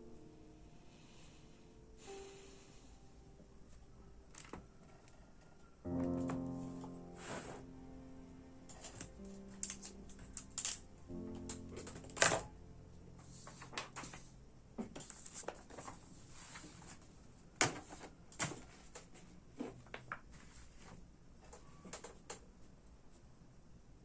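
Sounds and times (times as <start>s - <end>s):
keyboard keys clicking: 8.7s - 12.6s.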